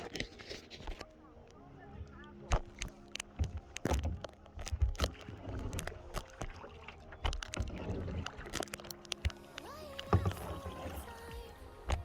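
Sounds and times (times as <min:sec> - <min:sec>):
paddles dipping in water: 0:00.0 - 0:12.0
kayak paddles knocking on hulls: 0:10.1 - 0:11.1.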